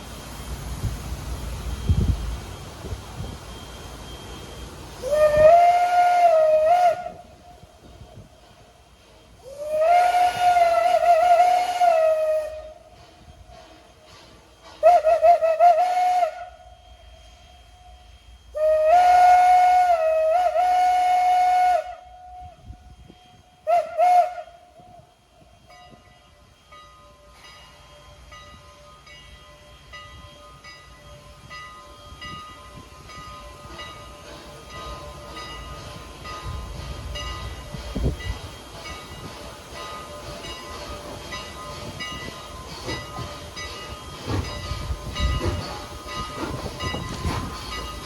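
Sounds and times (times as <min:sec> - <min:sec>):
train running rumble: 0:00.0 - 0:48.0
steam whistle blasts: 0:03.5 - 0:28.9.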